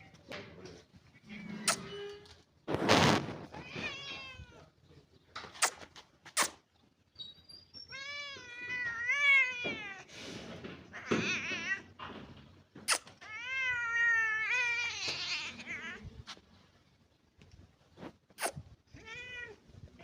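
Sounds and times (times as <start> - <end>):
cat yowling: 13.2 - 16.0.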